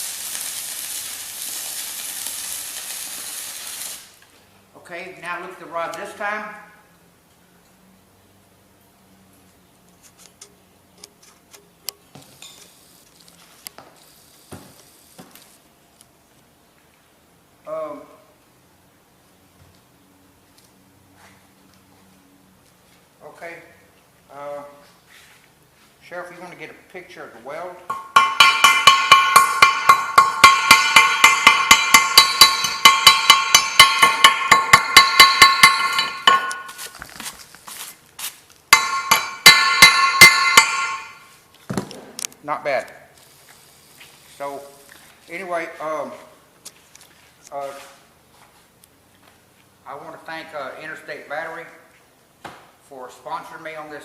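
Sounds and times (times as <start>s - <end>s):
hammer striking steel: 27.9s - 36.9s, 38.7s - 41.3s.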